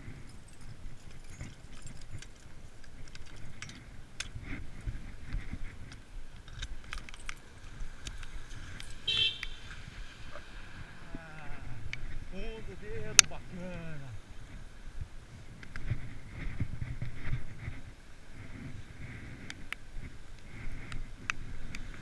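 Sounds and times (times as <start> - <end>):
bicycle rattling and clicking: 0.0 - 9.7.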